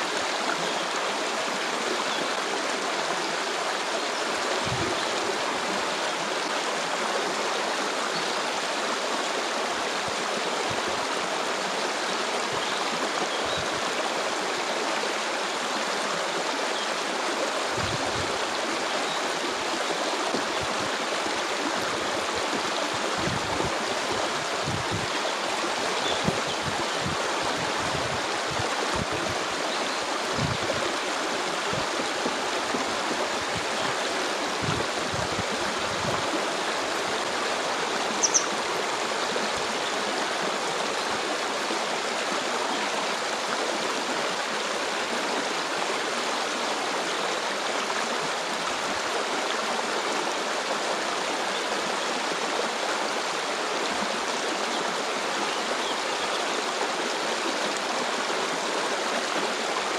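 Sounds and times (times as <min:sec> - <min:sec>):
stream water flowing: 0:00.0 - 0:59.9.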